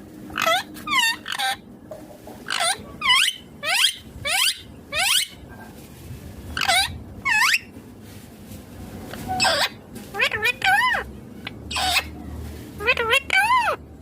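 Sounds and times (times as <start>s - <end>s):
parrot shrill calls: 0.4s - 1.6s, 2.5s - 5.4s, 6.6s - 7.7s, 9.4s - 12.1s, 12.8s - 13.8s.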